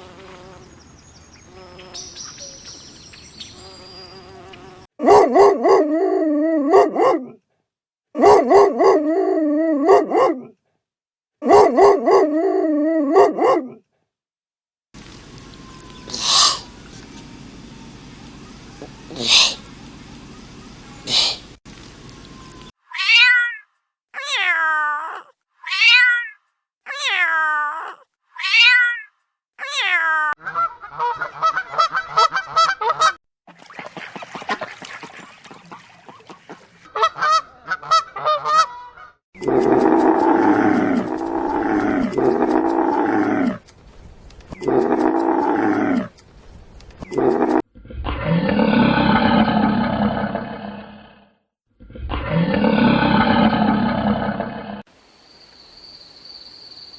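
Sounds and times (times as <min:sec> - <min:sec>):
animal calls and cries: 0:00.1 - 0:04.7, 0:15.4 - 0:21.6, 0:22.2 - 0:43.3
long drawn-out animal calls: 0:15.5 - 0:16.8
cat meowing: 0:22.9 - 0:23.6, 0:24.2 - 0:30.4.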